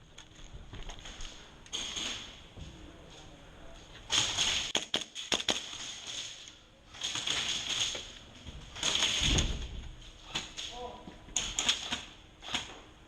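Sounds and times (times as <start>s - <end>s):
airsoft guns firing: 4.1s - 6.4s.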